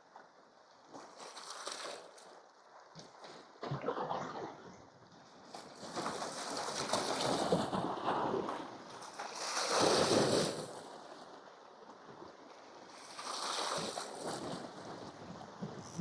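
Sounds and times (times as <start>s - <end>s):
waves washing against rocks: 5.6s - 11.1s, 12.9s - 16.0s.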